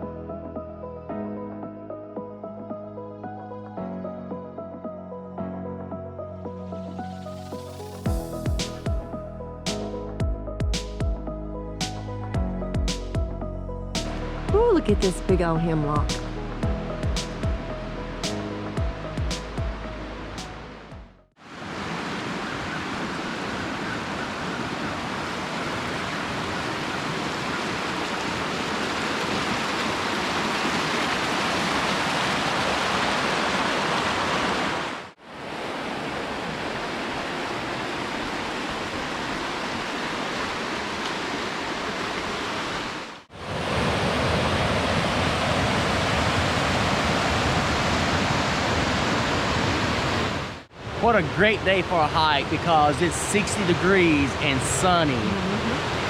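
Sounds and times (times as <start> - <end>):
water rushing in creek and waterfall: 18.3 - 56.0.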